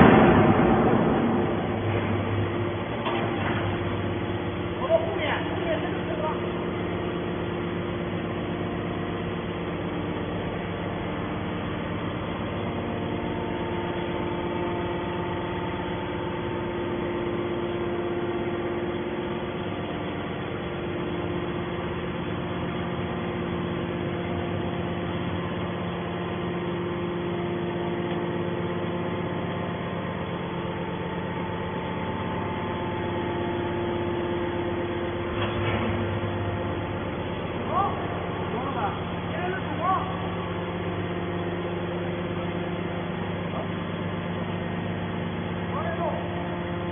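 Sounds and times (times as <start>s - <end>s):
hydraulic machine hum: 0.0s - 46.9s.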